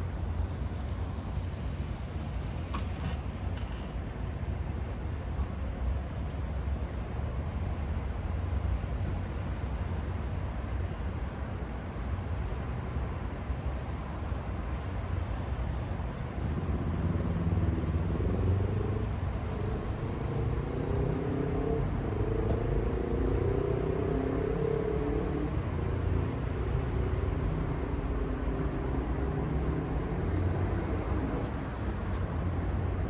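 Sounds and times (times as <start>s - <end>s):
city traffic rumble: 0.0s - 33.0s
vehicle engine passing: 16.5s - 31.4s.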